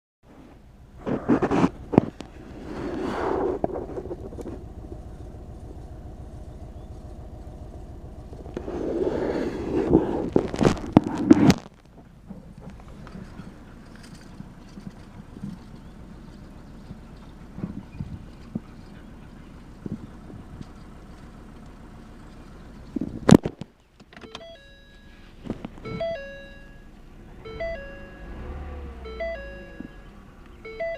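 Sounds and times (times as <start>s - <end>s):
car engine idling roughly: 0.6s - 23.4s
three-note warning chime: 24.3s - 25.2s, 25.9s - 30.9s.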